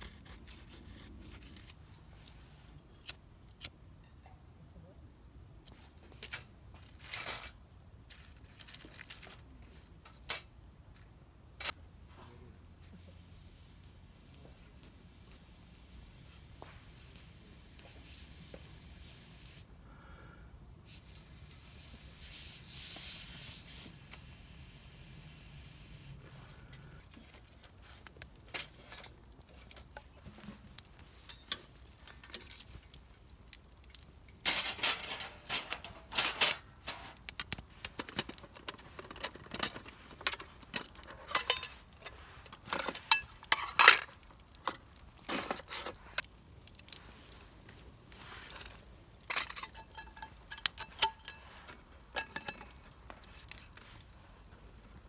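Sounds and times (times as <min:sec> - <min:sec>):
metal camp gear clinking: 0:34.3 - 0:46.0, 0:48.5 - 0:53.8.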